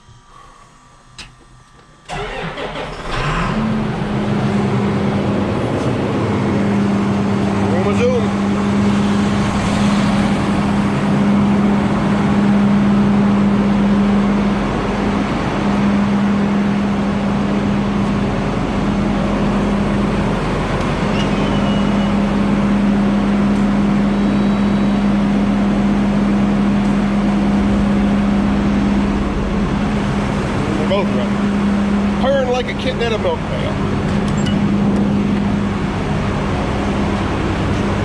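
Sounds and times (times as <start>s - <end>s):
engines idling: 0.0s - 38.0s.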